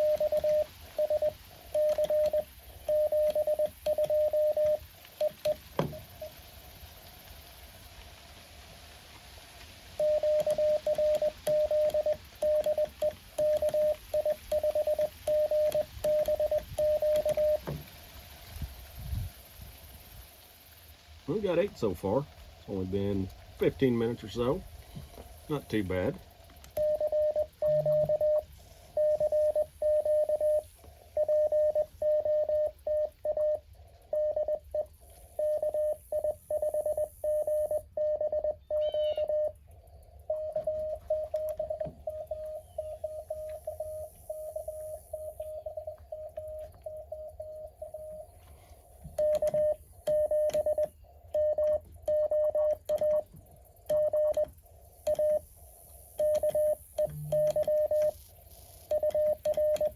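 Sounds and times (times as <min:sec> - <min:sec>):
morse code tone: 0:00.0 - 0:06.4, 0:10.0 - 0:17.9, 0:25.5 - 0:55.4, 0:56.2 - 0:58.2, 0:58.9 - 0:59.9.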